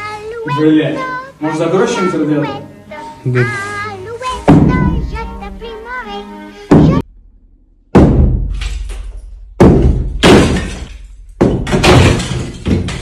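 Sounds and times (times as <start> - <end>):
wall being smashed: 7.9 - 13.0.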